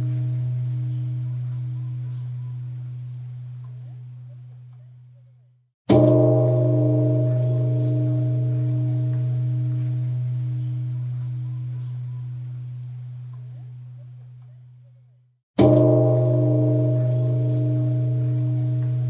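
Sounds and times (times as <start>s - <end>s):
temple bell ringing: 0.0s - 3.8s, 5.9s - 13.8s, 15.6s - 19.0s.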